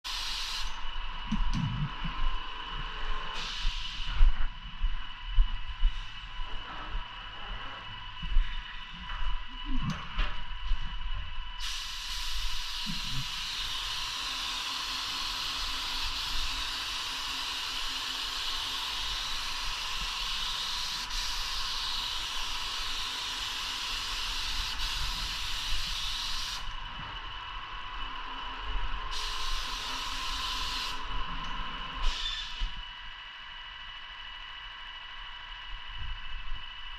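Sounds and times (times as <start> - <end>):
paint spray gun hissing: 0.1 - 0.8, 11.6 - 26.8, 29.1 - 31.1, 32.0 - 32.8
steady high whine: 0.1 - 36.9.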